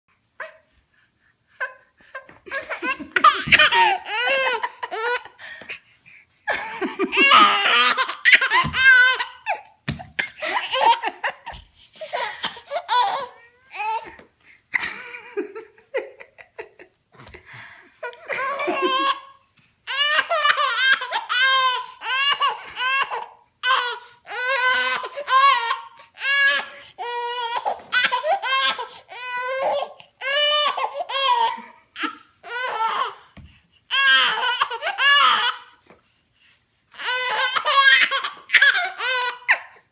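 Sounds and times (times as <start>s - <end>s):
baby laughing: 1.6s - 5.4s, 6.5s - 14.2s, 18.0s - 23.9s.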